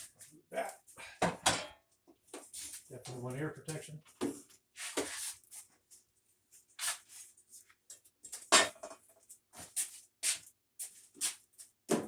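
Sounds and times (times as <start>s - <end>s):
objects knocking and scraping: 1.2s - 2.9s, 8.3s - 9.8s.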